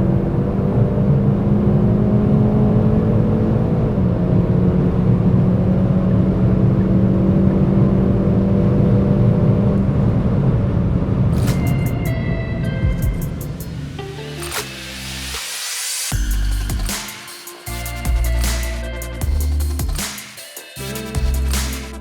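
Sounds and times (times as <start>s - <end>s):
car engine at high revs: 0.0s - 11.6s
wind and road noise: 0.0s - 16.2s.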